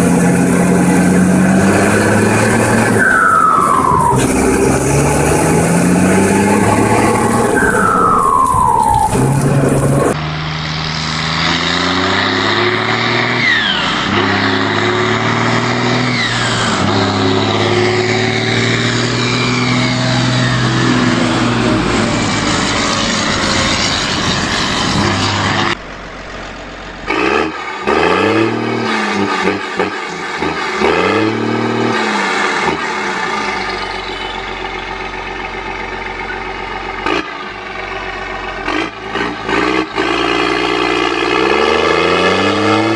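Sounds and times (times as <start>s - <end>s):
engine revving: 0.0s - 42.9s
heavy diesel engines under load: 0.0s - 42.9s
turbo whistle: 1.8s - 10.2s.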